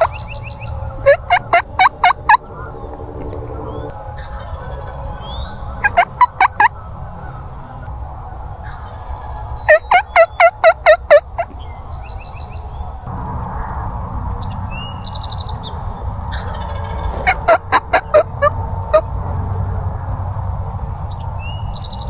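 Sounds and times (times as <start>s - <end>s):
turkey yelping: 0.0s - 7.9s, 8.5s - 12.6s, 16.3s - 19.4s
small songbirds chirping: 0.0s - 13.1s, 14.4s - 19.4s, 21.0s - 22.0s.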